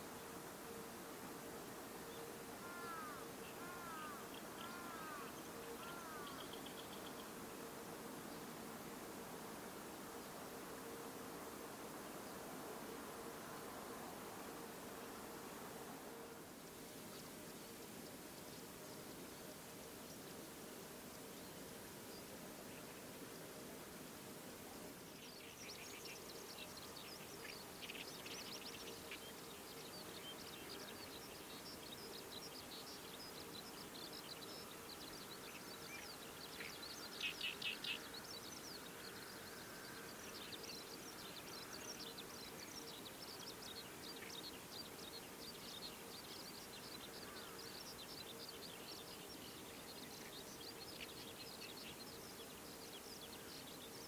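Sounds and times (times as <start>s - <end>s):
small birds chirping: 2.1s - 7.4s, 25.1s - 54.0s.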